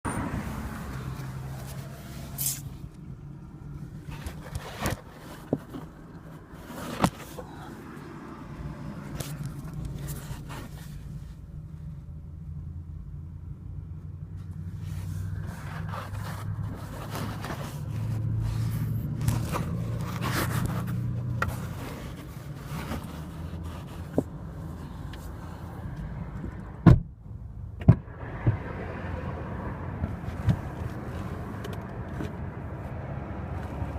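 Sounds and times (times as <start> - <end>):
low engine and road hum: 0.0 - 33.9
seat creaks and clicks: 3.9 - 7.7, 9.0 - 11.1, 15.3 - 24.4.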